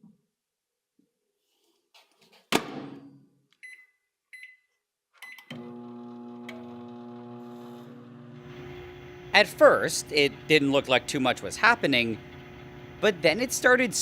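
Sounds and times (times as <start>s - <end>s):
keypad beeps: 3.6s - 4.6s
microwave humming: 5.5s - 14.0s.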